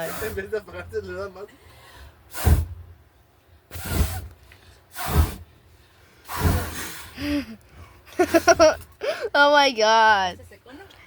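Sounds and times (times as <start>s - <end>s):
breath hitting microphone: 3.7s - 7.9s.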